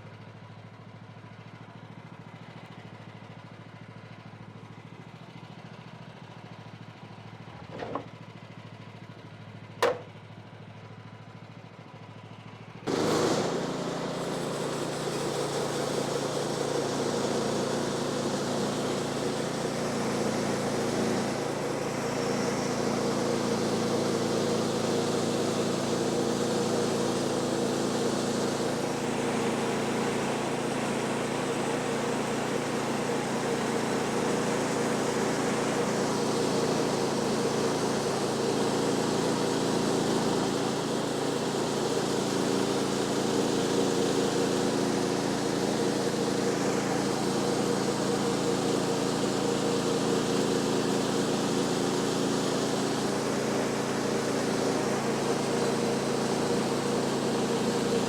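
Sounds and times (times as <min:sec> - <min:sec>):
engine running steadily: 0:00.0 - 0:58.0
loud steady engine: 0:00.0 - 0:58.0
sharp knocks: 0:09.8 - 0:10.1.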